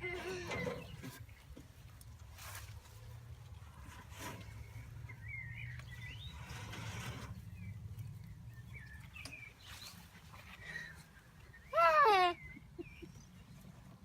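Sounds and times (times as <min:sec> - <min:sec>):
rustling: 0:00.0 - 0:05.1.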